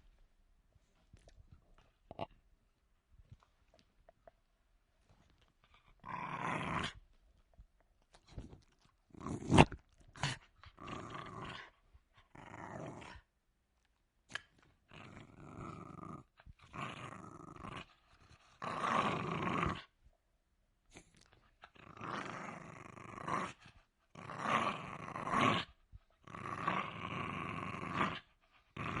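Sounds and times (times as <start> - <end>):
dog growling: 5.7 - 7.0, 9.1 - 13.3, 14.9 - 19.9, 20.9 - 29.0.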